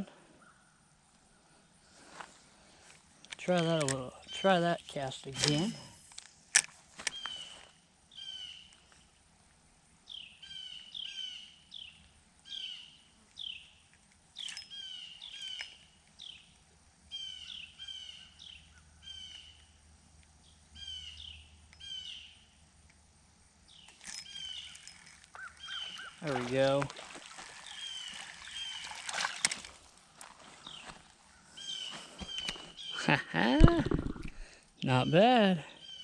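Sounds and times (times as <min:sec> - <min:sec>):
bird chirping: 0:07.1 - 0:09.0, 0:10.1 - 0:13.8, 0:14.4 - 0:19.8, 0:20.4 - 0:22.6, 0:23.7 - 0:29.6, 0:30.4 - 0:36.0.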